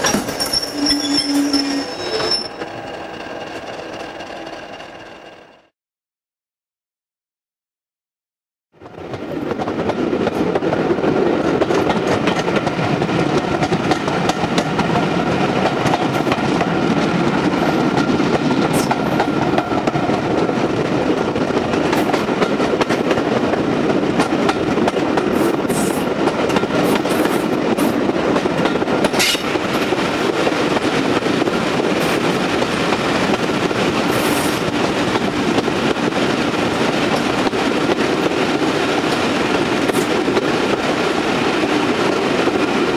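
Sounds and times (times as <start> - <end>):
brief high squeaks: 0.0 - 2.7
train rumbling on track: 0.0 - 5.7, 8.8 - 42.9.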